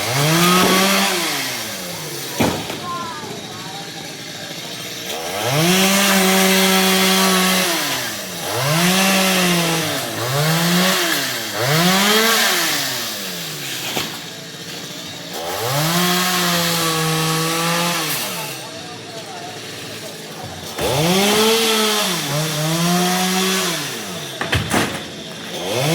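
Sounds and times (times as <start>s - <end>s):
chain cutting into wood: 0.0s - 2.9s
chainsaw revving: 0.0s - 25.9s.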